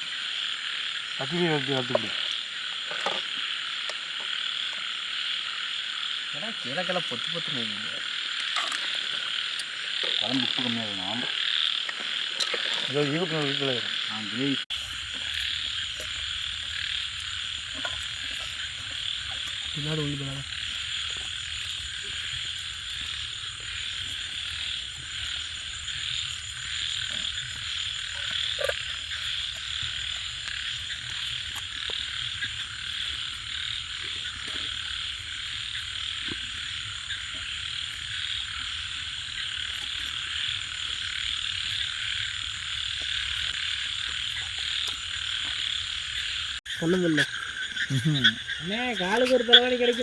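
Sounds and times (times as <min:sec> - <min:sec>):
chorus of frogs calling: 0:00.0 - 0:50.0.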